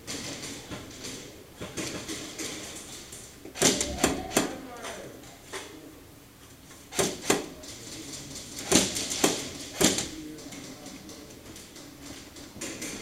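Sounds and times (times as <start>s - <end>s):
airsoft gun shots: 3.5s - 4.6s, 6.9s - 7.5s.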